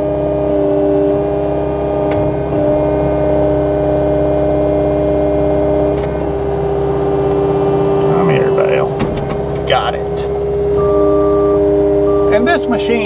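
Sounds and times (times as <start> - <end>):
skid steer machine whine: 0.0 - 12.3
low engine rumble: 1.1 - 12.1.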